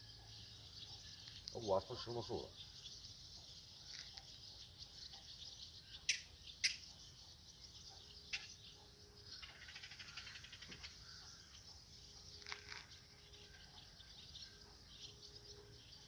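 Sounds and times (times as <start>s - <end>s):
insects chirring: 0.0s - 16.0s
sharp bird chirps: 0.0s - 16.0s.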